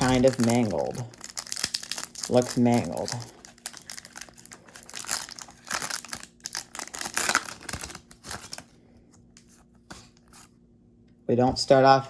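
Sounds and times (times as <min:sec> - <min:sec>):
foil wrapper crinkling and tearing: 0:00.0 - 0:08.7.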